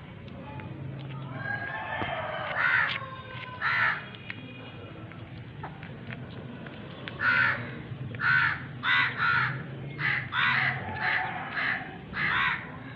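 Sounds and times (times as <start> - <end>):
crow cawing: 2.6 - 2.9, 3.6 - 4.0, 7.2 - 12.7.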